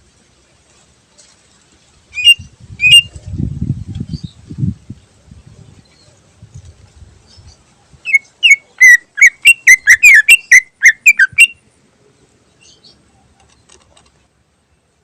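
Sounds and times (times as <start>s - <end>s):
bird singing whistled notes: 2.2s - 3.2s, 7.3s - 11.6s.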